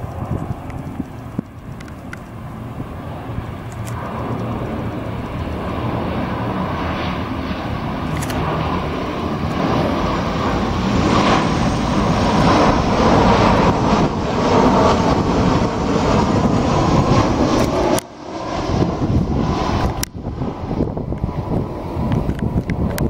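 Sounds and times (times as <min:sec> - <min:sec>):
passenger airliner passing: 0:00.0 - 0:23.0.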